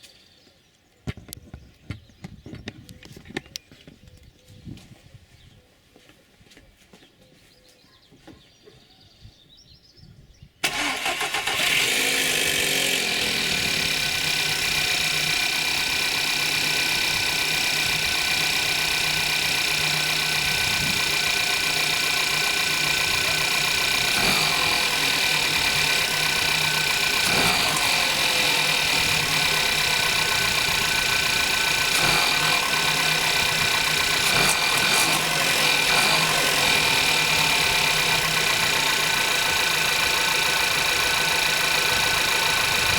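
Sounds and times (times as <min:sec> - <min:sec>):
car engine starting and idling: 0:10.6 - 0:42.9.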